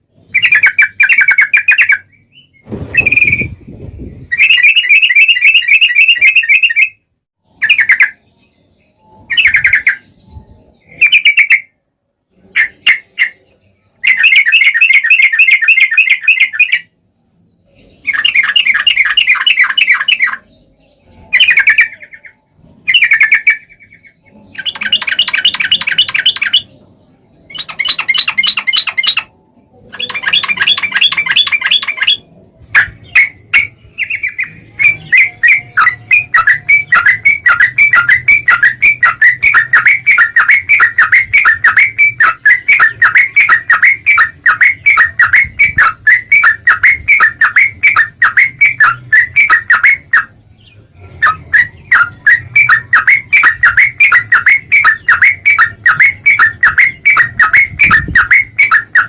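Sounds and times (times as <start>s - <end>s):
bird chattering song: 0.0s - 59.0s.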